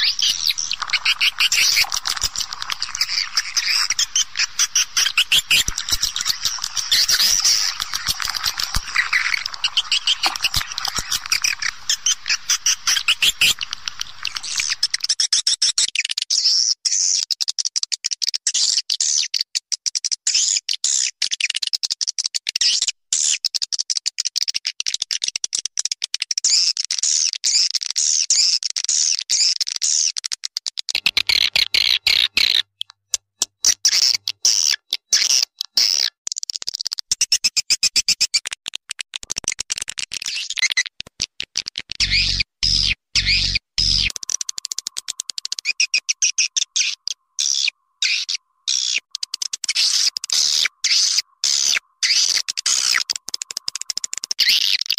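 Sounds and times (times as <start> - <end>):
swiftlets twittering: 0.0 - 15.1.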